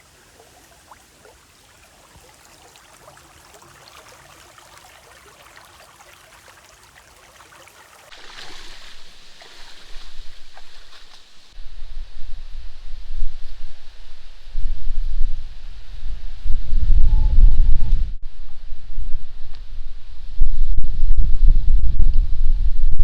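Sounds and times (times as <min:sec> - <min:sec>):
water trickling and babbling: 0:00.0 - 0:11.6
strong wind buffeting microphone: 0:08.5 - 0:23.0.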